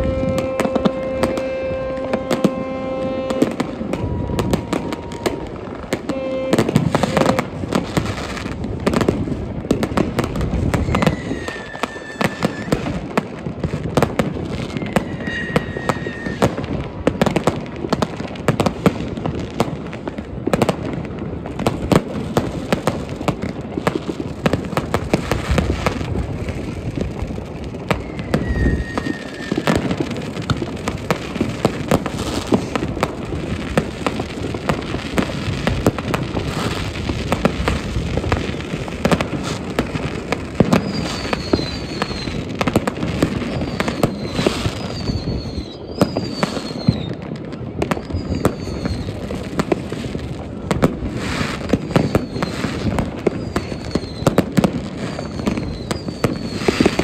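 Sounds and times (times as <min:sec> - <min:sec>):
fireworks bangs and crackling: 0:00.0 - 0:57.0
falling whistles: 0:10.8 - 0:13.0, 0:14.6 - 0:16.6, 0:27.9 - 0:30.0, 0:40.7 - 0:42.5, 0:43.4 - 0:47.2, 0:48.0 - 0:49.2, 0:51.8 - 0:54.3, 0:55.0 - 0:57.0.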